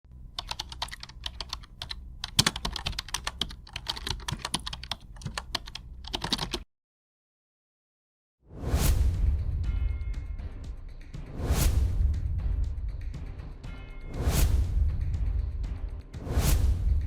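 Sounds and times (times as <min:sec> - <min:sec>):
keyboard typing clicks: 0:00.4 - 0:06.6
whoosh: 0:08.5 - 0:09.7, 0:11.3 - 0:12.4.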